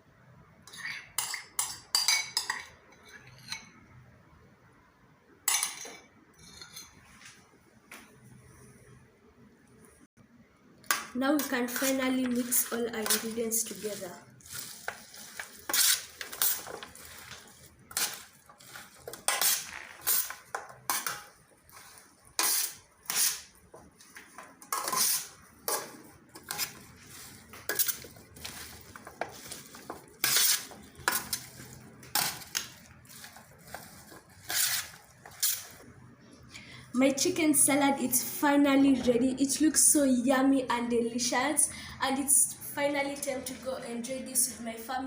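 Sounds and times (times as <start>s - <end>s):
utensils clinking against a bowl: 0.7s - 3.8s.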